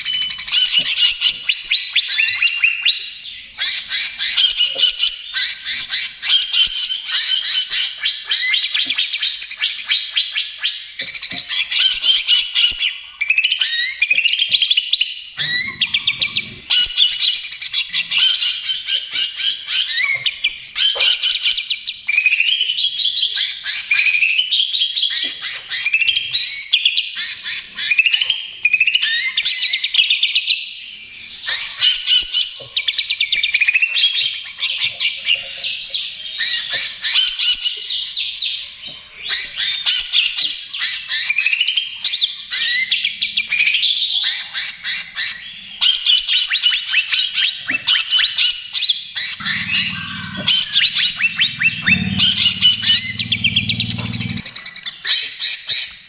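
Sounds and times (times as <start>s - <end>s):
bird singing chattering phrases: 15.4s - 21.0s, 49.2s - 54.7s.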